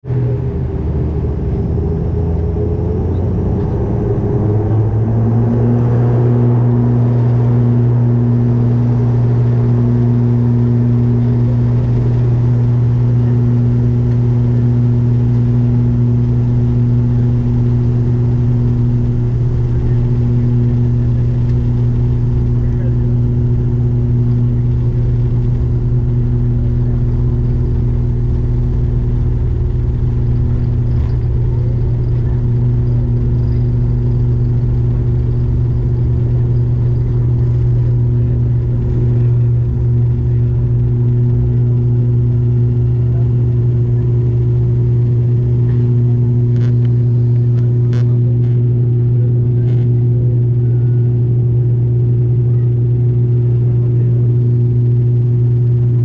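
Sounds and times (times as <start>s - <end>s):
turboprop engine drone in cabin: 0.0s - 56.0s.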